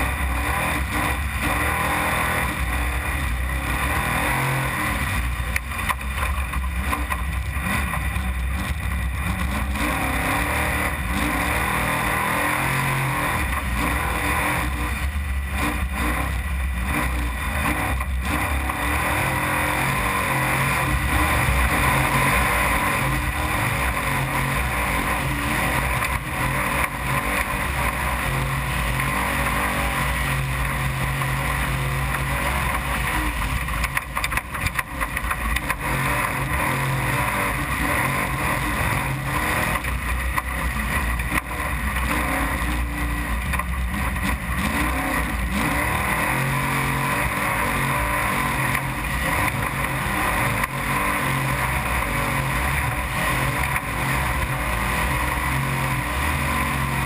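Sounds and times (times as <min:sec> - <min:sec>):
steady rush of noise: 0:00.0 - 0:57.0
truck engine running hard: 0:00.0 - 0:57.0
rattles: 0:32.0 - 0:36.6.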